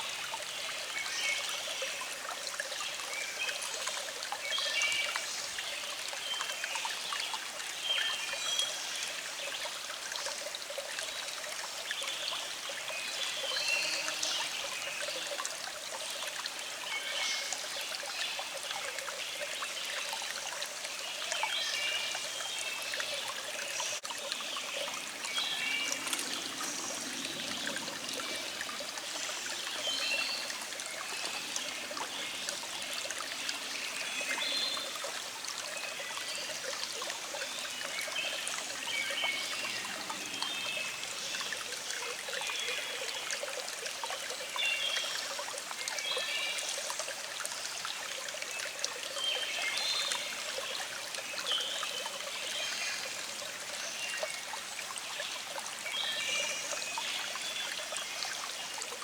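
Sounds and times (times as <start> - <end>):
stream trickling: 0.0 - 59.0
songbirds singing: 21.2 - 41.7.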